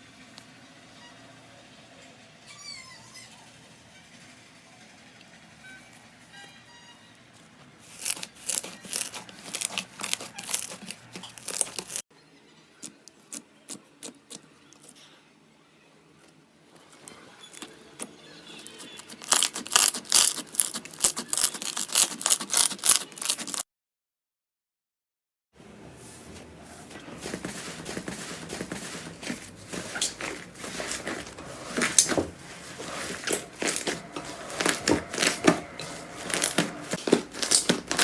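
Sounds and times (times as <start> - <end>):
slime crackling and popping: 7.9 - 12.0, 18.6 - 23.6, 37.3 - 38.0.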